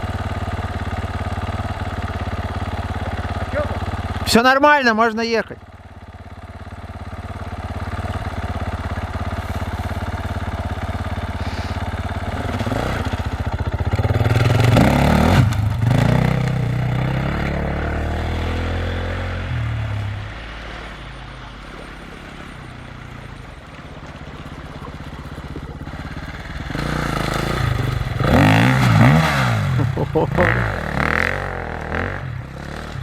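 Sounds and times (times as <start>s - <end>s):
vehicle engine passing by: 7.0s - 33.0s.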